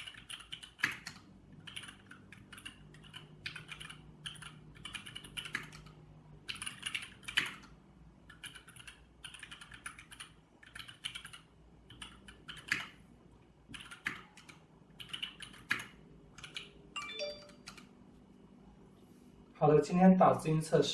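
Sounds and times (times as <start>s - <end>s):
mechanical keyboard typing: 0.0s - 7.7s, 8.3s - 12.9s, 13.7s - 17.9s.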